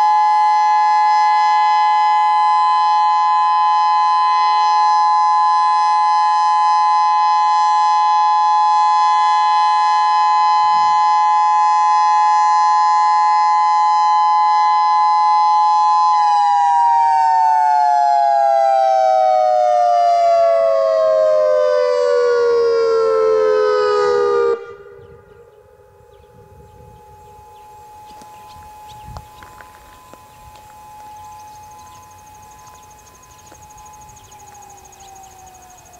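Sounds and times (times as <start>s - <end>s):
electronic warning siren: 0.0s - 35.9s.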